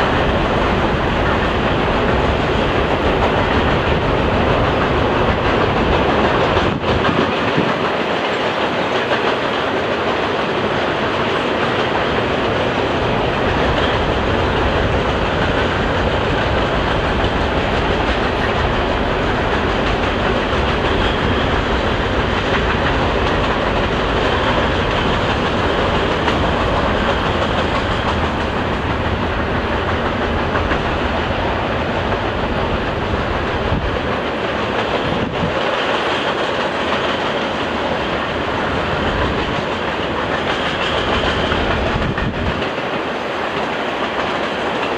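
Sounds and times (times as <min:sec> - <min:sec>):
train rumble: 0:00.0 - 0:44.9.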